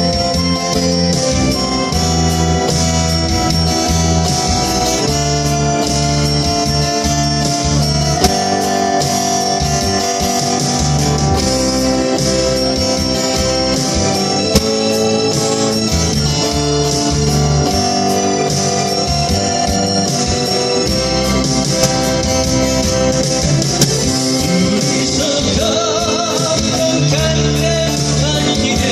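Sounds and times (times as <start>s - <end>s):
backing band with bass and beat: 0.0s - 28.9s
guitar melody: 0.0s - 28.9s.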